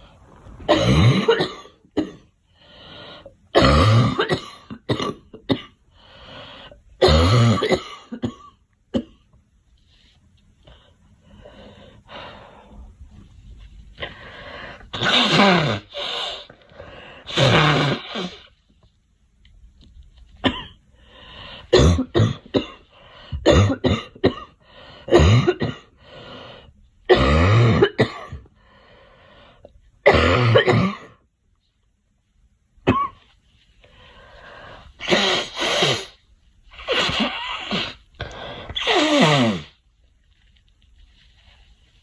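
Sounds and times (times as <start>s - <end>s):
girl coughing: 0.7s - 2.3s, 3.6s - 5.8s, 7.0s - 9.2s, 20.4s - 20.8s, 21.7s - 22.8s, 23.4s - 25.9s, 27.1s - 28.4s, 30.0s - 31.2s.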